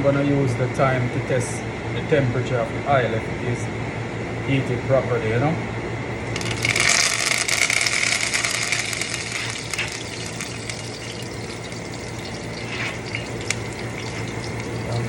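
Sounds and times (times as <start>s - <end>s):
herbs sizzling in hot oil: 6.3s - 15.0s.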